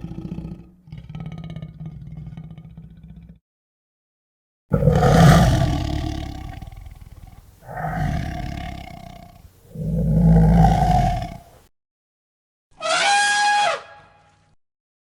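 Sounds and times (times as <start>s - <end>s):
large animal deep calls: 4.7s - 11.6s.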